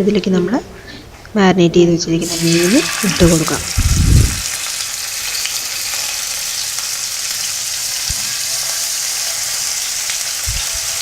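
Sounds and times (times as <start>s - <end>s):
fish sizzling in a pan: 2.3s - 11.0s
soft low thumps: 3.8s - 4.4s.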